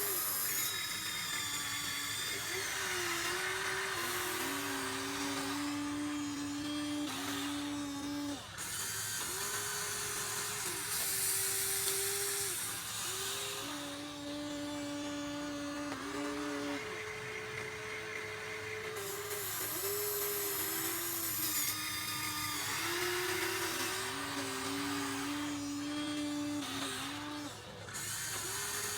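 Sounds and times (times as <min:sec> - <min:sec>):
small electric motors whining: 0:00.0 - 0:28.9.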